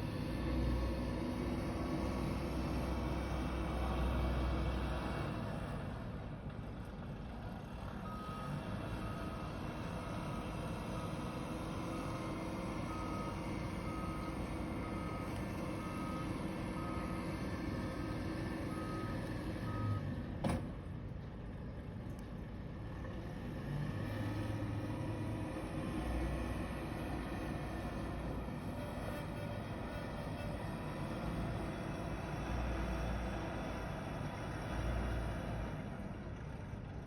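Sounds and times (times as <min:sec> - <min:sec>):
reversing alarm beeping: 0:11.8 - 0:17.2, 0:18.7 - 0:20.1.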